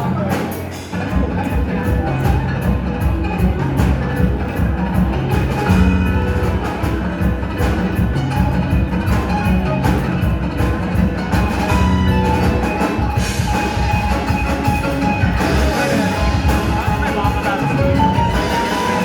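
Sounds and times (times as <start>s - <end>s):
music with held notes: 0.0s - 19.0s.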